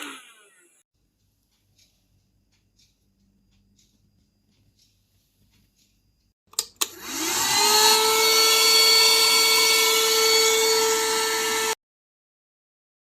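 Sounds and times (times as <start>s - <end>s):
handheld vacuum motor whine: 0.0s - 0.8s, 6.8s - 11.8s
vacuum switch clicks: 6.5s - 7.1s.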